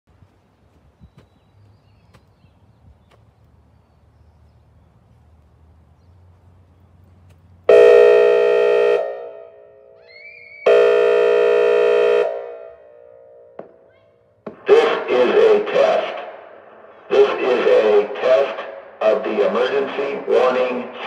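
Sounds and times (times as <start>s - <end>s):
siren air-horn blasts with echo: 7.7s - 14.0s.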